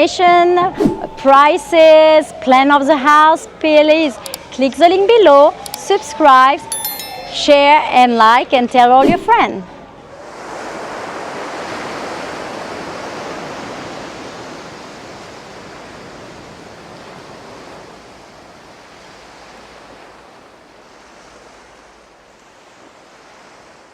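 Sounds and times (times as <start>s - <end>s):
waves breaking: 10.1s - 23.9s.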